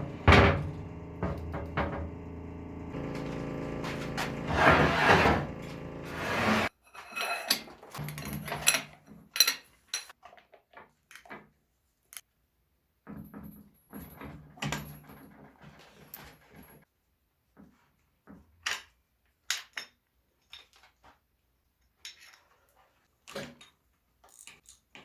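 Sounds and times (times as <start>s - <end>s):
tools and metal parts clinking: 6.9s - 10.1s.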